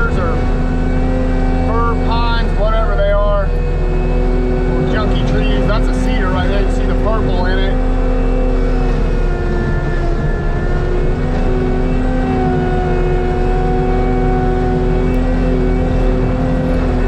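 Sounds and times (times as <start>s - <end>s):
diesel engine rumble: 0.0s - 17.0s
mulcher head whining: 0.0s - 17.0s.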